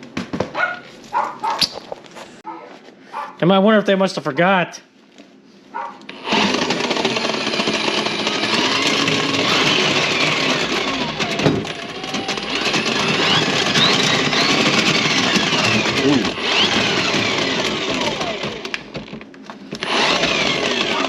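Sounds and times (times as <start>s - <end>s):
drain snake motor whirring: 6.1s - 18.8s, 19.8s - 21.0s.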